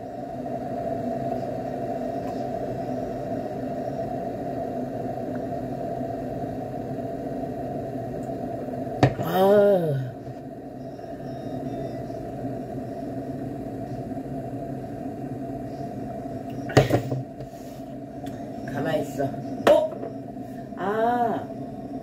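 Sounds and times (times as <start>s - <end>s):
low mechanical hum: 0.0s - 22.0s.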